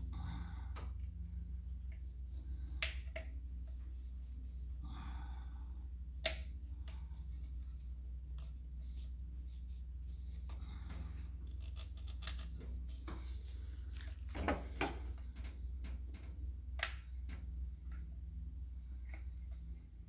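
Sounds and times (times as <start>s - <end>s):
low hum: 0.0s - 20.0s
spark plug wires clicking: 6.2s - 6.5s.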